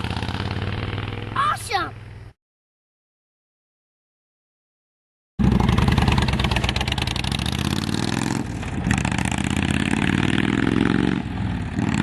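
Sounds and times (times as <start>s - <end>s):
motorcycle engine revving: 0.0s - 2.4s, 5.4s - 12.0s.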